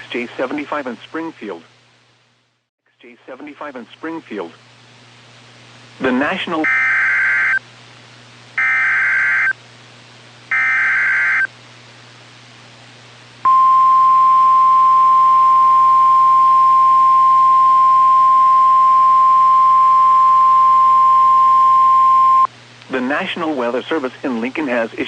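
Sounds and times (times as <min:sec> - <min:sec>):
steady high alarm tone: 0:10.5 - 0:11.5.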